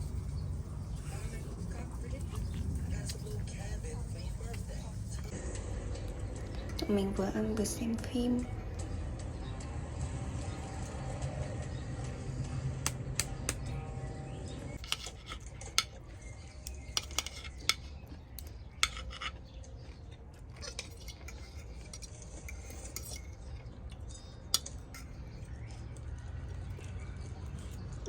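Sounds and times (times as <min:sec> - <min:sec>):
low steady hum: 0:00.0 - 0:28.0
utensils clinking on plates: 0:14.8 - 0:18.0, 0:18.8 - 0:19.9, 0:20.6 - 0:25.4.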